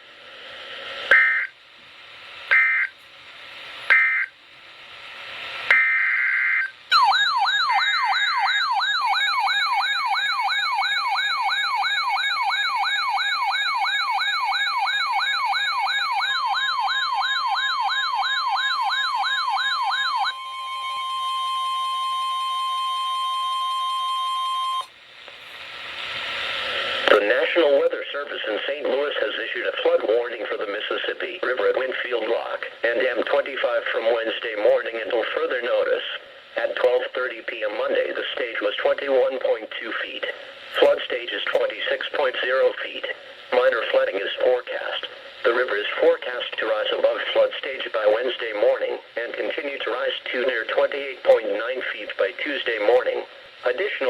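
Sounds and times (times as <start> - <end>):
steady warning alarm tone: 1.1 - 1.6, 2.5 - 3.0, 3.9 - 4.4, 5.7 - 24.9
wailing siren: 5.7 - 24.9.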